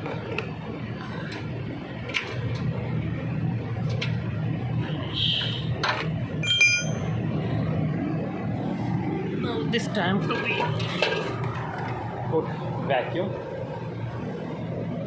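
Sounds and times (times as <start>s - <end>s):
ringing metal clink: 6.4s - 7.1s.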